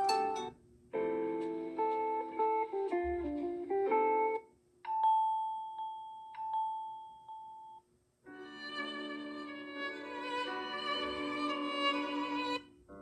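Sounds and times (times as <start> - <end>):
plucked guitar-like ringtone melody: 0.0 - 7.3
violin-like strings ringtone: 8.3 - 12.6.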